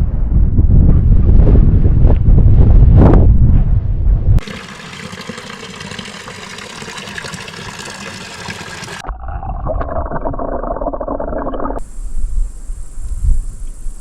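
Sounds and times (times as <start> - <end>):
running water: 4.4 - 11.8
muffled bass-heavy water sound: 8.7 - 13.8
crickets chirring: 11.8 - 14.0.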